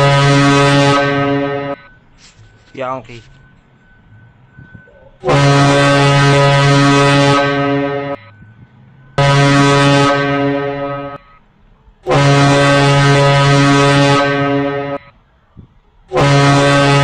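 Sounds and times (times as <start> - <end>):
deep horn blasts: 0.0 - 1.9, 4.7 - 11.2, 12.0 - 15.2, 16.1 - 17.0.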